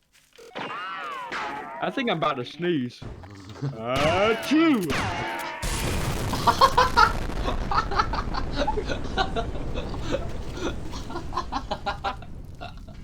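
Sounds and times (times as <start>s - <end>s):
person laughing: 6.3s - 13.0s.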